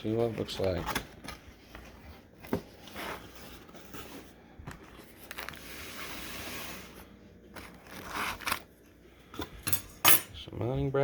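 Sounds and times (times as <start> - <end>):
packaging scraping rustle: 1.8 - 8.7.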